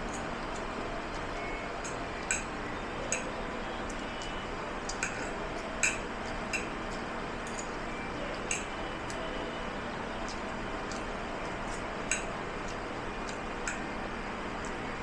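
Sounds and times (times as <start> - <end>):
dishes and cutlery clinking: 4.9 - 6.7, 7.4 - 7.8.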